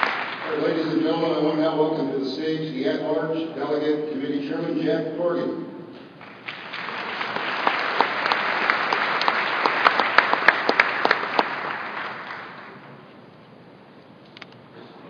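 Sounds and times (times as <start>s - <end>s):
audience applauding: 0.0s - 1.1s, 6.2s - 13.0s.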